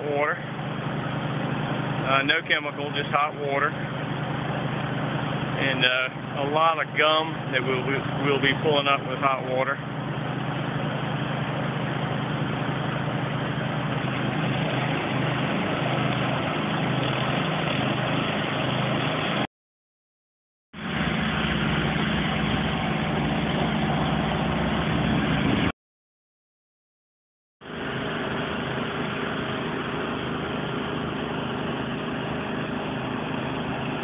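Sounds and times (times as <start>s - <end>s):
pressure washer engine drone: 0.0s - 19.5s, 20.7s - 25.7s, 27.6s - 34.0s.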